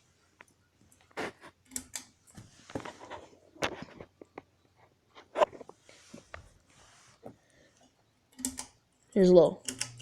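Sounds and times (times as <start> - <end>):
faint rustling: 2.2 - 8.0.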